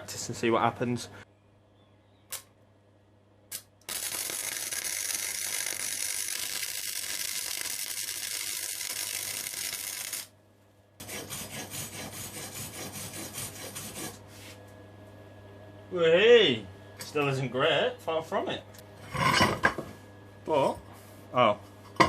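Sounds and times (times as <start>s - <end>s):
welder arc crackling and hissing: 3.5s - 10.3s.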